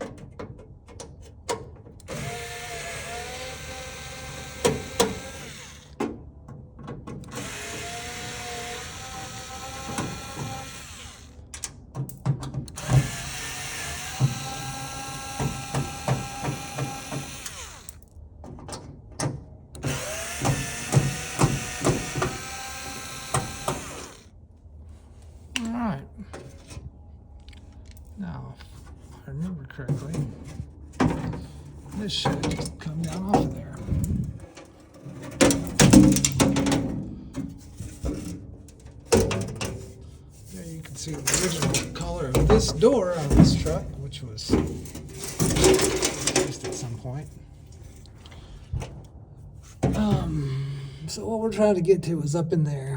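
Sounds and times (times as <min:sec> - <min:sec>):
power drill motor whine: 0:02.0 - 0:06.0, 0:07.2 - 0:11.5, 0:12.8 - 0:18.0, 0:19.8 - 0:24.3
trim panel scraping and creaking: 0:39.1 - 0:47.0.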